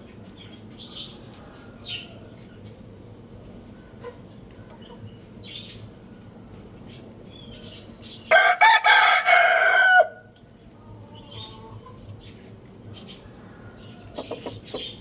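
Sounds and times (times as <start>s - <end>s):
faint chicken clucks: 0.1s - 2.9s, 3.6s - 6.4s, 7.5s - 15.0s
rooster crowing: 8.3s - 10.3s.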